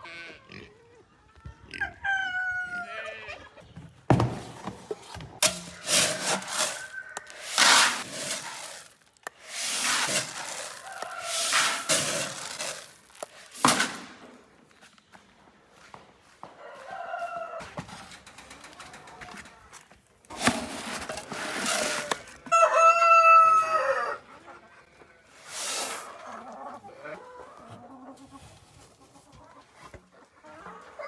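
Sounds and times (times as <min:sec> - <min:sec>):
scuffling: 0:04.1 - 0:16.4, 0:20.3 - 0:22.4
chickens clucking: 0:21.8 - 0:31.0.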